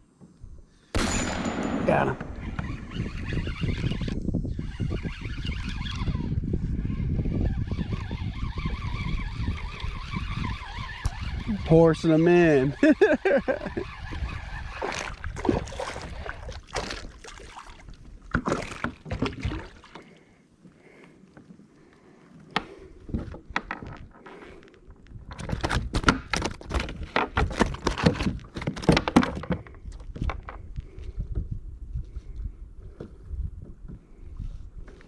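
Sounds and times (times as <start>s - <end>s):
water sloshing: 14.7s - 20.4s.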